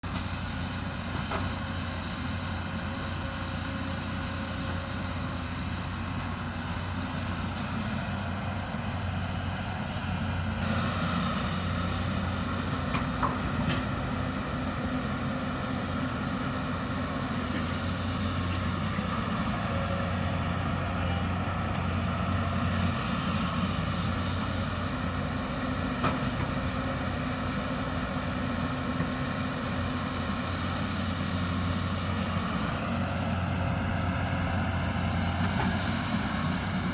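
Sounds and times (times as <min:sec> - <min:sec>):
excavator diesel engine running: 0:00.0 - 0:36.9.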